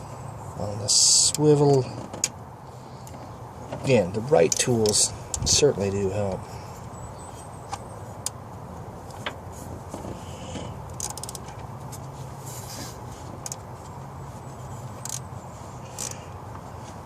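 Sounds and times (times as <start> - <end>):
rapid ratchet ticking: 10.9 - 11.5, 15.0 - 16.3
socket wrench clicking: 10.9 - 11.5, 15.0 - 15.3, 16.0 - 16.2.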